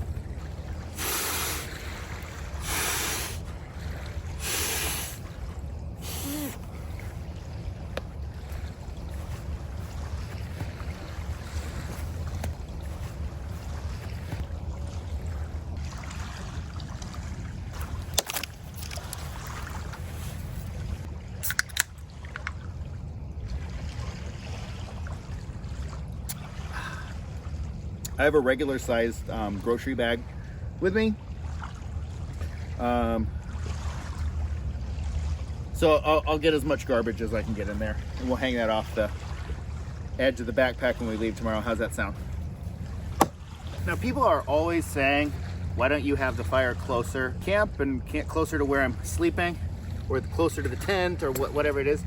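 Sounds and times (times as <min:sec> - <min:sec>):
wind rumble on microphone: 0:00.0 - 0:01.2, 0:05.2 - 0:21.4
water washing on shore: 0:00.0 - 0:21.5
steady low rumble: 0:00.0 - 0:52.0.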